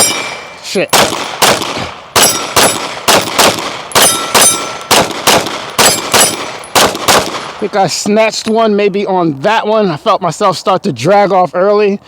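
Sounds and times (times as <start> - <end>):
steel targets ringing: 0.0 - 1.4, 2.2 - 3.0, 3.9 - 4.9, 5.8 - 6.8
pistol shots: 0.0 - 7.7.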